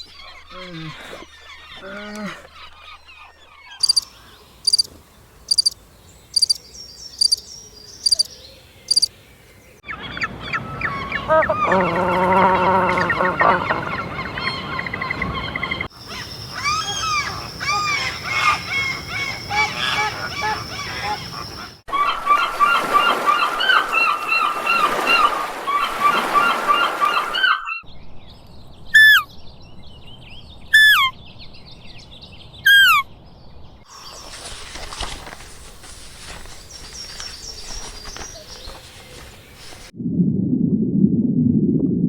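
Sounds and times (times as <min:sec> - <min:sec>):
birds chirping and chattering: 0:00.0 - 0:21.8
loud sharply falling bird calls: 0:03.7 - 0:04.9, 0:08.0 - 0:09.1.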